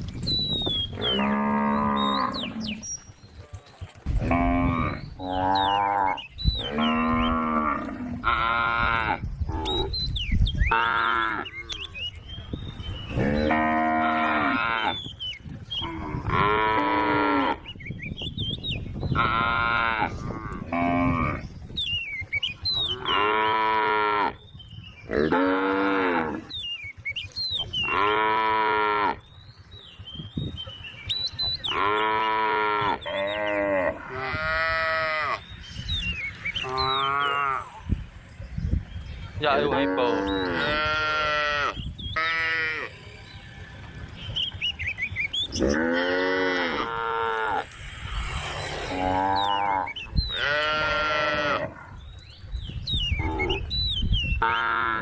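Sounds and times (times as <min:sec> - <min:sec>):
cows mooing: 0:00.9 - 0:02.8, 0:04.1 - 0:09.9, 0:13.1 - 0:15.0, 0:15.8 - 0:17.6, 0:19.2 - 0:21.5, 0:22.9 - 0:24.4, 0:25.1 - 0:26.5, 0:27.8 - 0:29.2, 0:31.7 - 0:35.5, 0:36.6 - 0:37.9, 0:39.6 - 0:43.0, 0:45.5 - 0:47.7, 0:48.9 - 0:52.0, 0:54.4 - 0:55.0.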